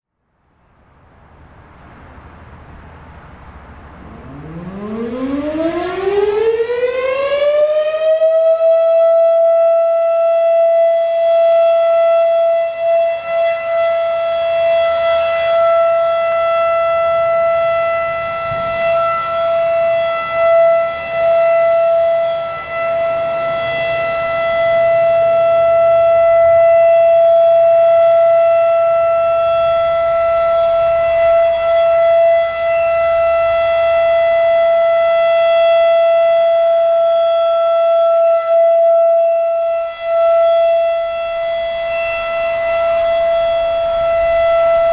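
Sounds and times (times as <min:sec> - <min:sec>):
steady warning siren tone: 0:00.4 - 0:44.9.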